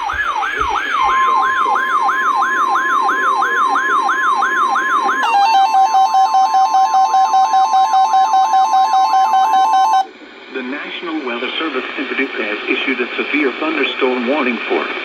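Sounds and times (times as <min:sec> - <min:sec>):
electronic siren yelping: 0:00.0 - 0:10.1
steady high tone: 0:00.0 - 0:10.1.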